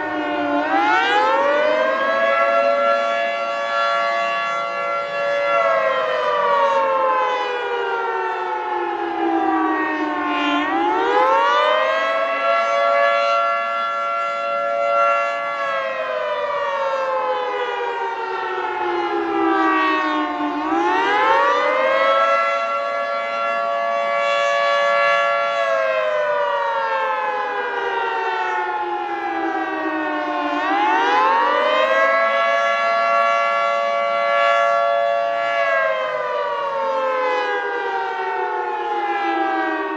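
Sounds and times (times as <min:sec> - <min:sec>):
two-tone siren wailing: 0:00.0 - 0:39.9.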